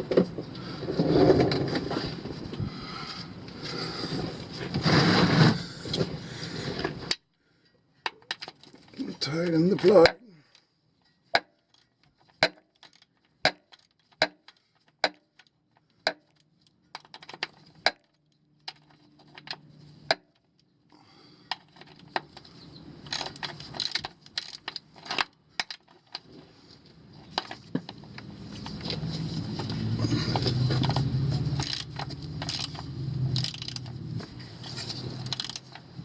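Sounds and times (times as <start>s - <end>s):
ratchet wrench clicking: 31.4s - 33.9s.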